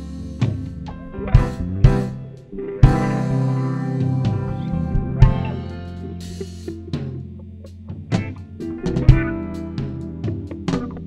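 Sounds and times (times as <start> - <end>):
band chord ringing: 0.0 - 10.4
steady bass note: 0.0 - 11.0
loud drum hit: 0.4 - 6.4.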